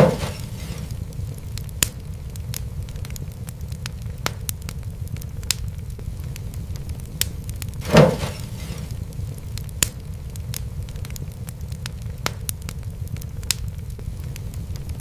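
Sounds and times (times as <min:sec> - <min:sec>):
fire pops: 0:00.0 - 0:15.0
fireplace fire crackling: 0:00.0 - 0:15.0
low rumble: 0:00.0 - 0:15.0.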